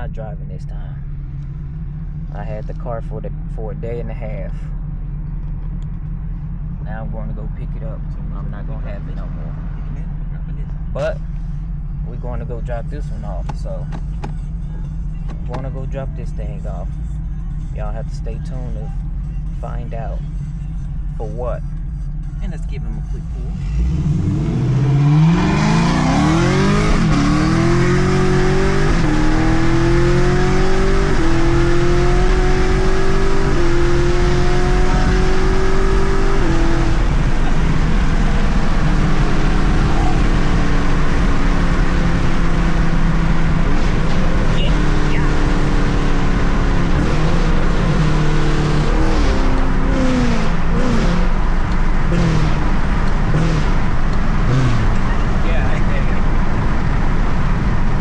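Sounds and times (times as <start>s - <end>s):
car engine accelerating through gears: 22.2s - 58.0s.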